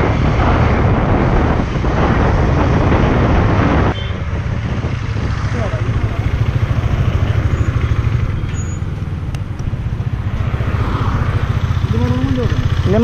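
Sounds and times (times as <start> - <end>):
motorcycle engine running: 4.1 - 13.0.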